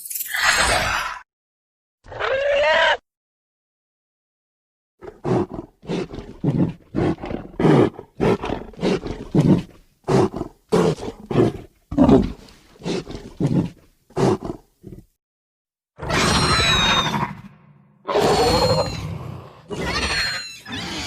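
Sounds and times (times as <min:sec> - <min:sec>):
creature shriek with falling tones: 0:00.3 - 0:01.2, 0:02.1 - 0:03.0, 0:16.0 - 0:17.5, 0:18.1 - 0:21.0.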